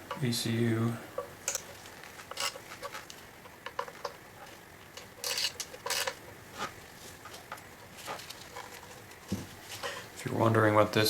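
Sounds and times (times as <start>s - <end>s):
wrench scraping on metal: 1.2s - 4.2s, 4.9s - 6.2s.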